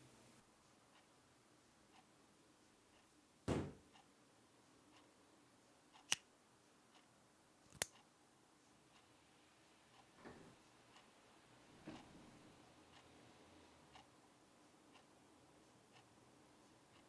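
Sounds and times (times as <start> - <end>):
dull thump: 3.5 - 3.8.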